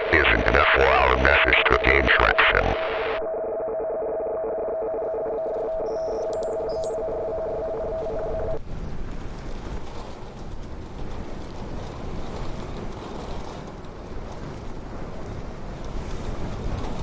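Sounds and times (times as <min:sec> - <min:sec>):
two-tone electronic signal: 0:00.0 - 0:08.6
rushing rumbling noise: 0:07.0 - 0:08.6.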